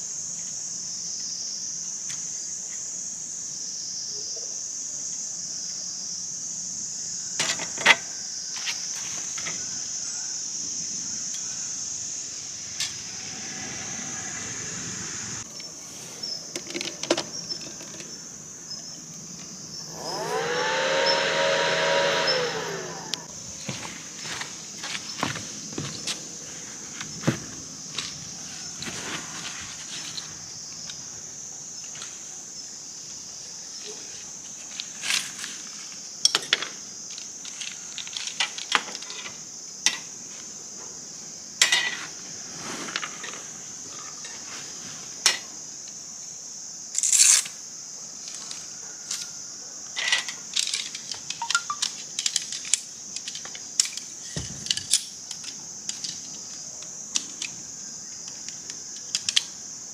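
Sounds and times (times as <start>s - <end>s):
high-pitched insect drone: 0.0s - 42.0s, 45.2s - 59.9s
short loud scrape: 19.9s - 23.3s
camp gear clicks and clinks: 50.0s - 59.6s.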